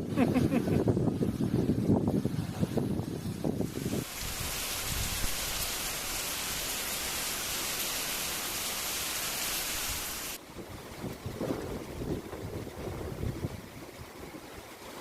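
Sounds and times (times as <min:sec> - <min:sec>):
wind rumbling on microphone: 0:00.0 - 0:06.6, 0:10.4 - 0:15.0
heavy rain hissing: 0:03.4 - 0:10.4.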